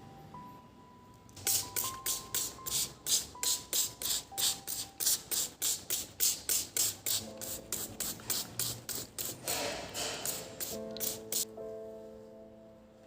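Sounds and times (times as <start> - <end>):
soft background music: 0.0 - 13.0
brushing strokes: 1.4 - 11.5.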